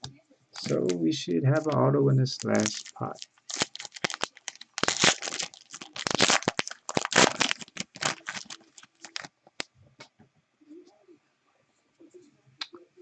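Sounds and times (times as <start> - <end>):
foil wrapper tearing and crinkling: 0.6 - 1.0, 2.4 - 9.3
cards being handled: 2.4 - 9.3.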